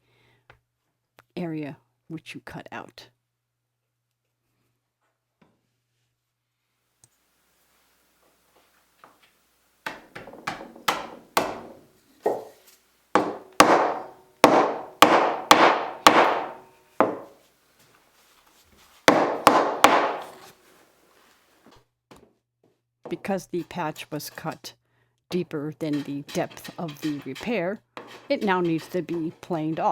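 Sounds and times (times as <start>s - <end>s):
hammer striking wood: 9.8s - 12.6s, 13.2s - 17.4s, 19.1s - 20.5s.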